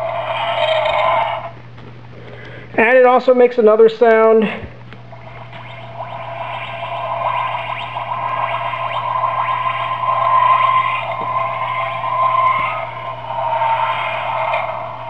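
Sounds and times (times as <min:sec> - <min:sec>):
tinny wavering electronic toy sound: 0:00.0 - 0:01.6, 0:05.1 - 0:15.0.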